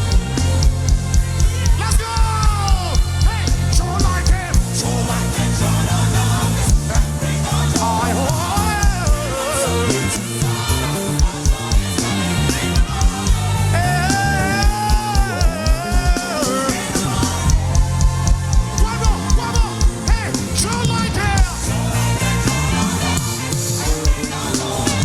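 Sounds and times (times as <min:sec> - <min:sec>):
bass line: 0:00.0 - 0:25.0
drums steady beat: 0:00.0 - 0:25.0.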